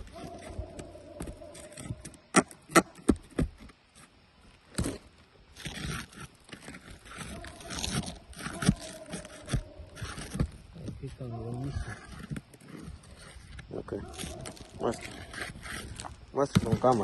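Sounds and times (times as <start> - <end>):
rough scraping: 0.0 - 17.0
tools tapping on roof shingles: 6.6 - 10.6, 14.1 - 17.0.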